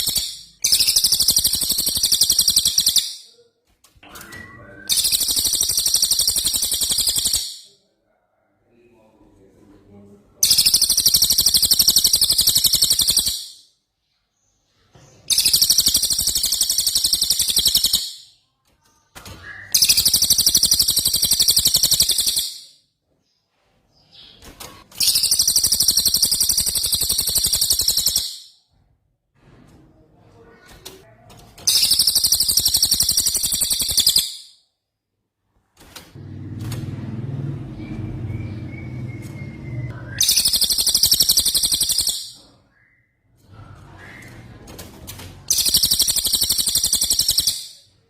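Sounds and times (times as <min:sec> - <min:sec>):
songbird rapid rolling trill: 0:00.0 - 0:03.2, 0:04.9 - 0:07.6, 0:10.4 - 0:13.6, 0:15.3 - 0:18.2, 0:19.7 - 0:22.6, 0:25.0 - 0:28.5, 0:31.7 - 0:34.3, 0:38.2 - 0:42.4, 0:45.5 - 0:47.8.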